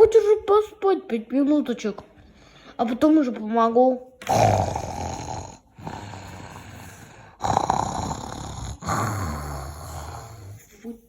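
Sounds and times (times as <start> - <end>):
person snoring loudly: 4.2 - 10.7.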